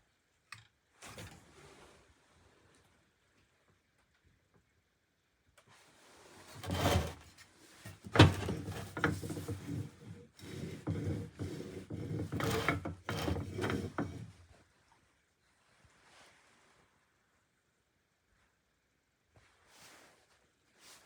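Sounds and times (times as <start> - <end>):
meat grinder parts scraping: 6.6 - 7.3, 7.9 - 14.3.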